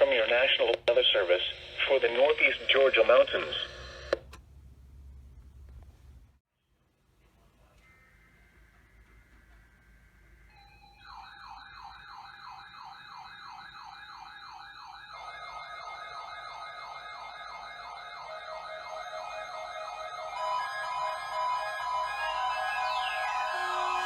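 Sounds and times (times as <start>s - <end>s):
steady beeping tones: 7.9s - 24.0s
electronic siren sweeping: 10.5s - 24.0s
second siren tone: 16.8s - 24.0s.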